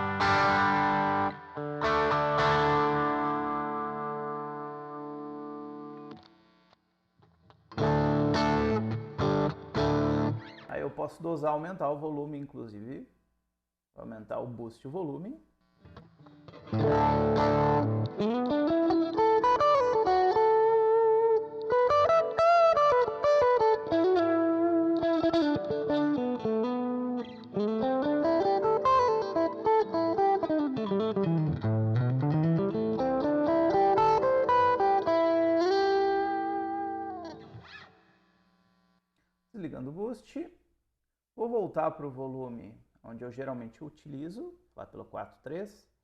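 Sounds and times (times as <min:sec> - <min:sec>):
overdriven electric guitar: 0:00.0 - 0:10.7, 0:15.8 - 0:38.9.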